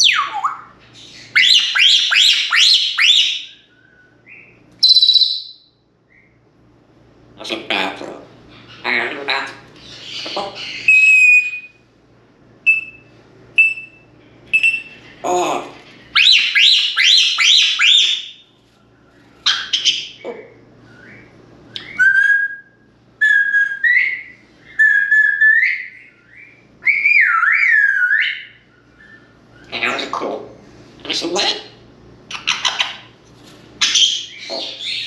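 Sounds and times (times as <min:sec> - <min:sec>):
parrot whistling: 0:00.0 - 0:06.4, 0:09.9 - 0:11.8, 0:12.6 - 0:15.2, 0:16.1 - 0:18.4, 0:19.4 - 0:20.2, 0:20.9 - 0:29.8, 0:33.8 - 0:35.0.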